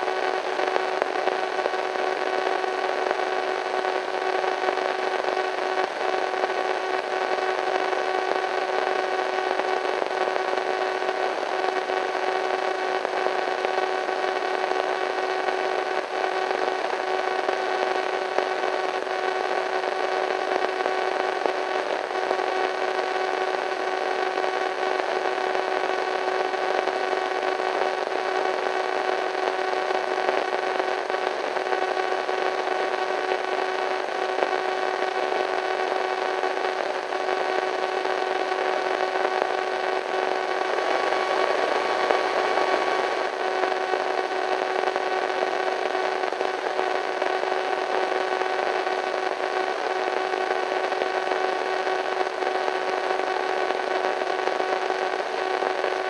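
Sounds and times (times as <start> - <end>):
radio static hiss: 0.0 - 56.0
faint hum tones: 40.0 - 43.5.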